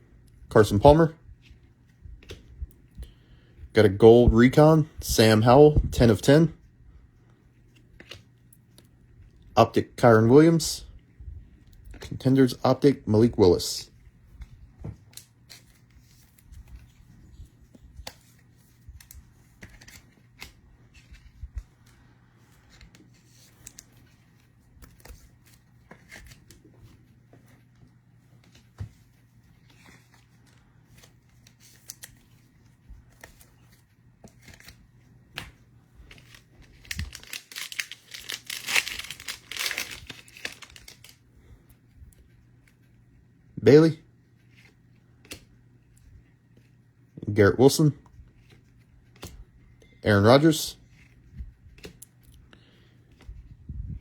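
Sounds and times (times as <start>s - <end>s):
card handling clicks and rustles: 14.4s - 43.0s, 50.4s - 53.5s
foil wrapper tearing and crinkling: 36.1s - 41.2s.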